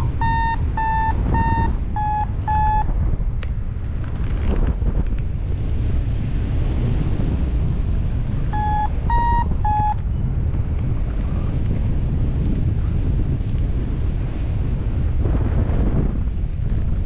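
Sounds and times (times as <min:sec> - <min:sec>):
variometer short beeps: 0:00.0 - 0:02.9, 0:08.5 - 0:10.0
wind rushing over microphone: 0:00.0 - 0:17.0.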